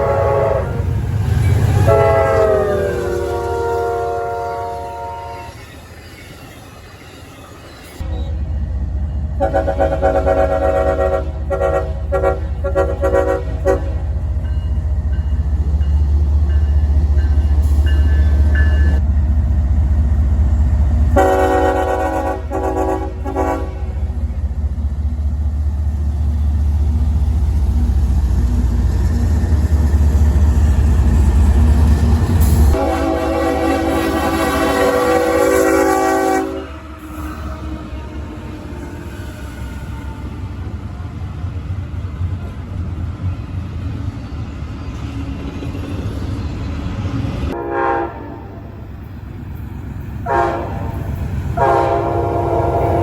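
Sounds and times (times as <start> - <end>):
locomotive air horn blasts: 0.0 - 1.0, 1.8 - 5.6, 9.4 - 14.1, 21.2 - 24.2, 32.7 - 38.3, 47.5 - 48.7, 50.2 - 51.0, 51.6 - 53.0
passing train rumble: 0.0 - 53.0.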